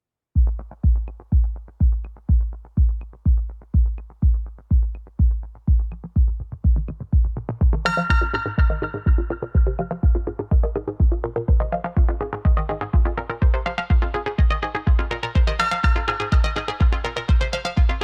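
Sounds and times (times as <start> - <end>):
electronic music: 0.4 - 18.0
kick drum beat: 0.4 - 18.0
bright synth chord: 7.9 - 10.0.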